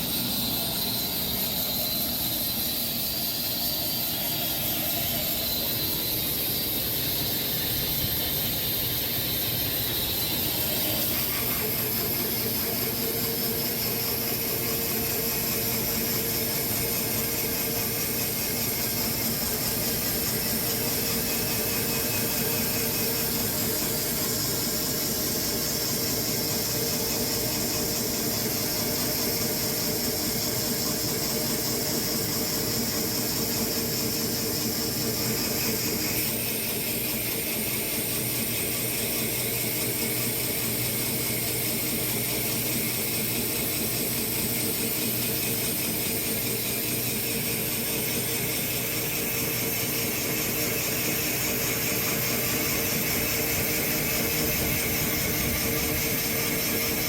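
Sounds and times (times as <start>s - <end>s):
sawmill blade cutting log: 0.0s - 26.1s
steady hum: 0.0s - 57.0s.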